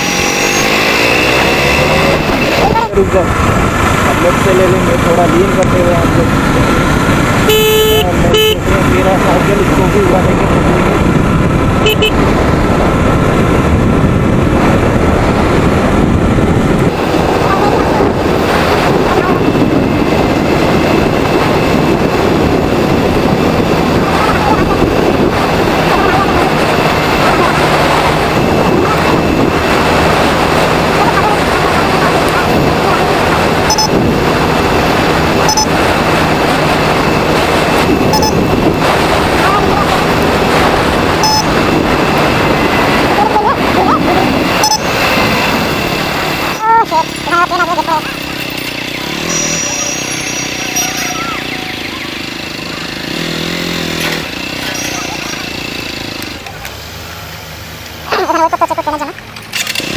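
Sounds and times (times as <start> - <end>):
wind rush on microphone: 0.0 - 49.8
road and traffic noise: 0.0 - 59.9
short beeps: 33.6 - 34.0, 35.4 - 35.8, 38.0 - 38.5, 41.2 - 41.6, 44.6 - 45.0, 49.2 - 52.2.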